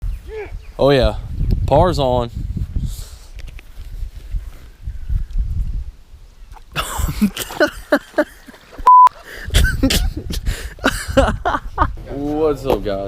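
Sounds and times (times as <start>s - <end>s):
censor bleep: 8.9s - 9.1s.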